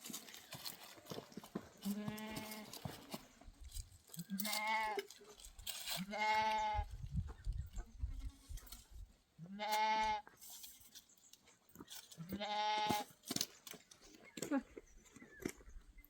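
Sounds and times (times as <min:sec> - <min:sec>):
sheep and goats bleating: 0:01.8 - 0:03.0, 0:04.1 - 0:07.0, 0:07.8 - 0:08.8, 0:09.4 - 0:10.4, 0:12.1 - 0:13.2.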